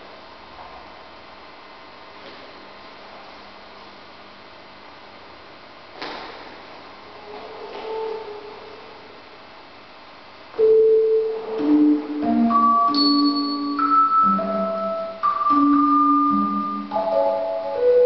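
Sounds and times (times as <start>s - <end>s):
bell-like melody: 10.6s - 18.0s.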